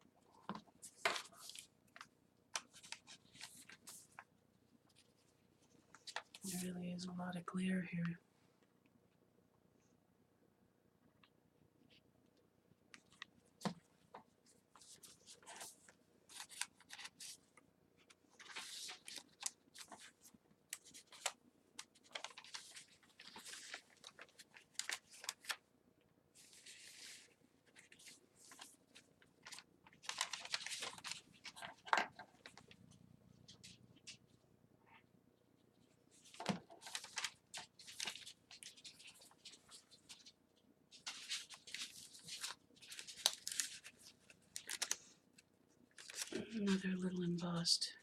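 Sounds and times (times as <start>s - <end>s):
paper rustling and crinkling: 0.1s - 6.8s, 13.0s - 25.6s, 26.4s - 34.4s, 35.7s - 46.8s.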